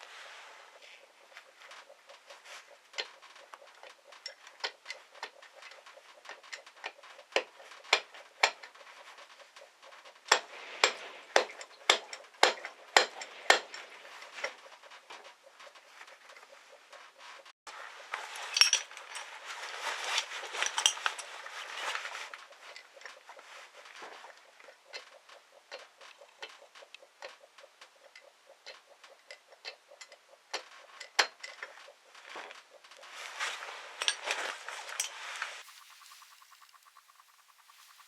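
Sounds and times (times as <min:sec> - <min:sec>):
metal tools clinking: 0:18.2 - 0:22.9, 0:33.3 - 0:35.4.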